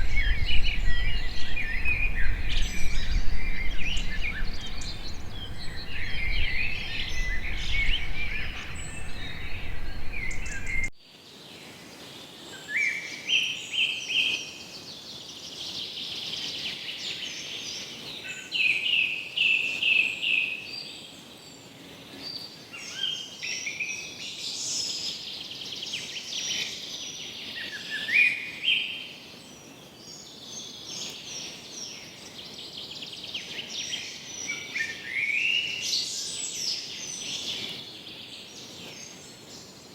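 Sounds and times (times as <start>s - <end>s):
low rumble: 0.0s - 10.9s
songbirds chirping and trilling: 0.0s - 10.9s.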